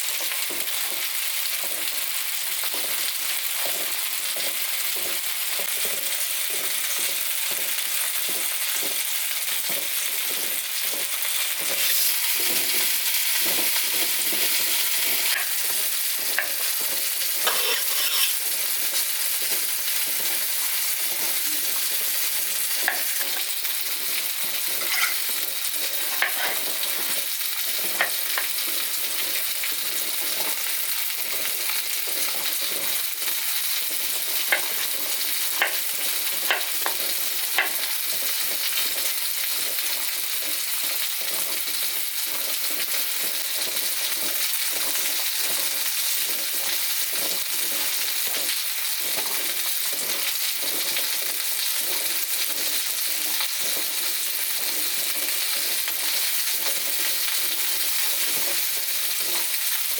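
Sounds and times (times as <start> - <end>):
food sizzling in a pan: 0.0 - 59.9
cooking utensil tapping: 15.3 - 18.4, 22.8 - 23.5, 36.5 - 37.0.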